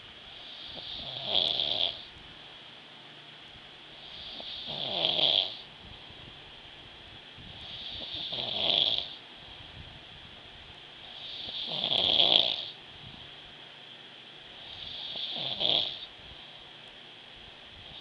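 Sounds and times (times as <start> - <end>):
person snoring: 0.5 - 2.1, 4.0 - 5.7, 7.6 - 9.2, 11.1 - 12.8, 14.7 - 16.1.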